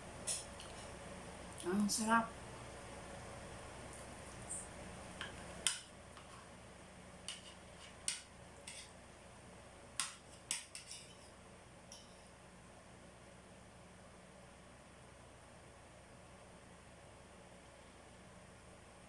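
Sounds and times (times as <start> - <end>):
cutlery clinking on a dish: 10.0 - 11.3.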